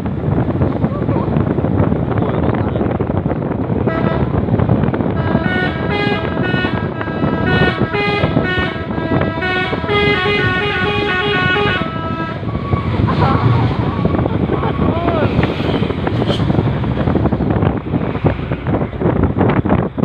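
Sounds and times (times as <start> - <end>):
engine and road noise: 0.0 - 20.0
truck horn playing musical notes: 3.8 - 4.4, 5.1 - 12.6.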